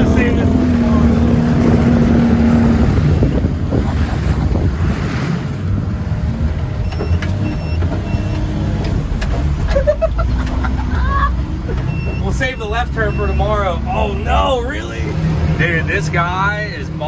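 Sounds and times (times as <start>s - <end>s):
diesel truck engine rumbling: 0.0s - 17.0s.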